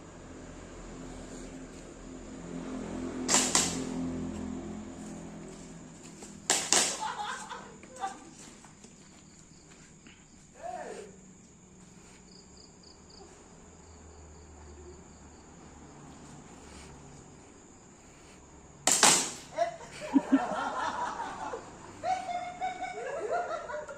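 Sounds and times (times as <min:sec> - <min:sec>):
airsoft gun firing crack: 0:03.3 - 0:04.1, 0:06.4 - 0:07.2, 0:18.8 - 0:19.5
person laughing: 0:06.9 - 0:08.5, 0:19.5 - 0:23.9
person calling out: 0:10.5 - 0:11.2.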